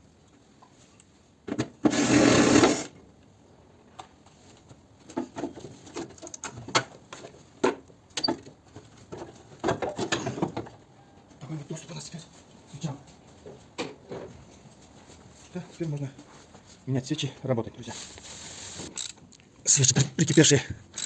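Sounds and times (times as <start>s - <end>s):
rush of hiss: 18.2s - 18.9s.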